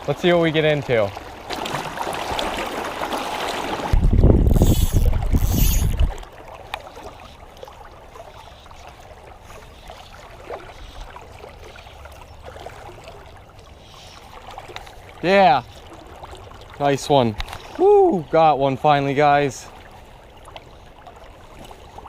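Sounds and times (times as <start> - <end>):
faint creek water rushing: 0.0 - 22.0
small ticks: 4.5 - 6.1.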